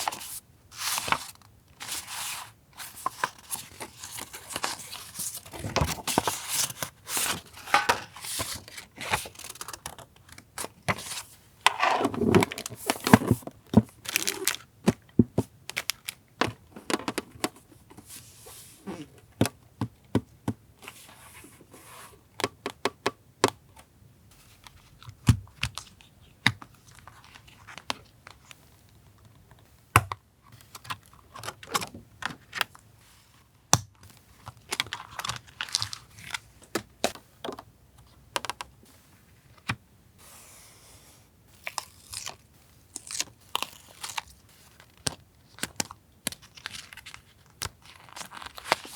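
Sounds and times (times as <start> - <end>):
paper rustling: 0.0 - 10.0.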